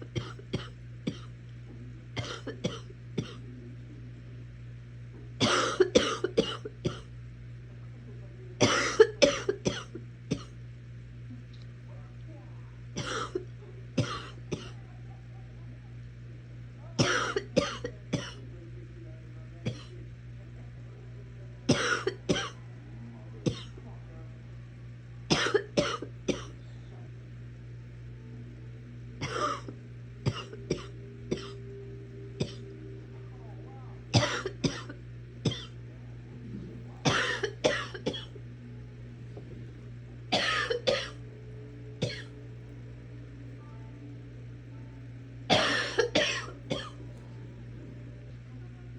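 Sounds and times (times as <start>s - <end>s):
person coughing: 0.2s - 1.3s, 2.2s - 3.4s, 5.4s - 7.1s, 8.6s - 10.5s, 13.0s - 13.4s, 17.0s - 18.4s, 21.7s - 22.6s, 29.2s - 29.7s, 30.3s - 31.6s, 34.2s - 35.7s, 37.0s - 38.3s, 40.4s - 41.2s, 42.0s - 42.3s, 45.5s - 47.0s.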